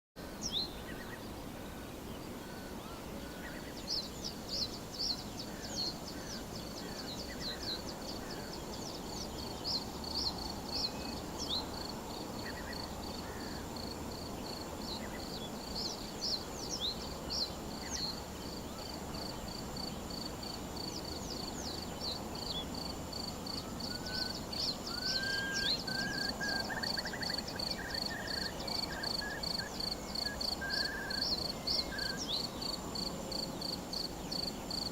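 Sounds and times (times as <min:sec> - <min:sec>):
songbird chirps: 0:00.2 - 0:34.9
cricket chirping: 0:00.4 - 0:34.9
bird whistled call: 0:23.9 - 0:32.4.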